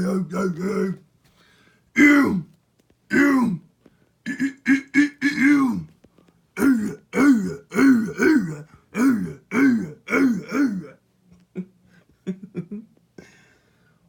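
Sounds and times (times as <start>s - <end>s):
man making throaty calls: 0.0s - 1.0s, 2.0s - 2.5s, 3.1s - 3.6s, 4.3s - 5.9s, 6.6s - 10.9s.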